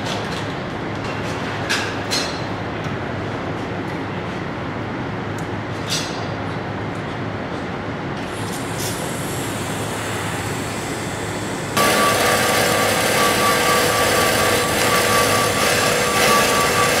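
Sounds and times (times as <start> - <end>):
steady background noise: 0.0 - 17.0
metalworking tool whining on steel: 11.7 - 17.0.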